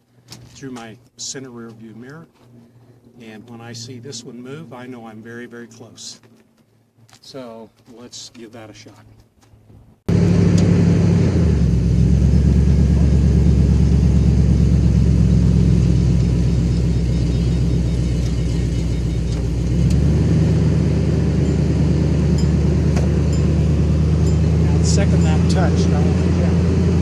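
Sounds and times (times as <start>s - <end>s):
pickup truck engine running: 10.1s - 27.0s.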